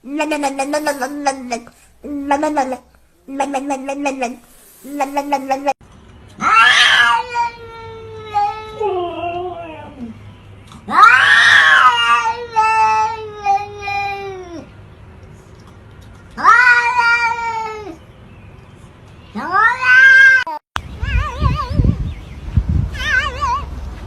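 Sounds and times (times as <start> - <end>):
cat meowing: 6.4 - 9.8, 10.9 - 14.6, 19.4 - 21.9, 23.0 - 23.7.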